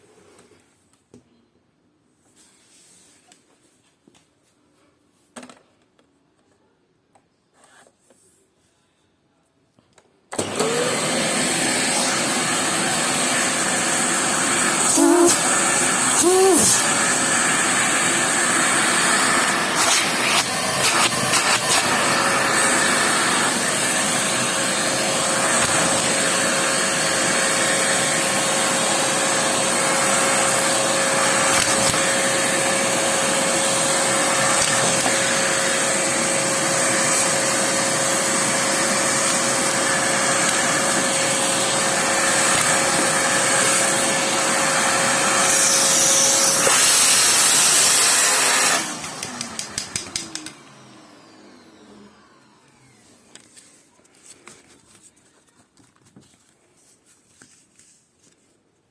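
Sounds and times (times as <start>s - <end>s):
vacuum cleaner running: 10.3s - 53.7s
vacuum cleaner whine: 10.3s - 53.8s.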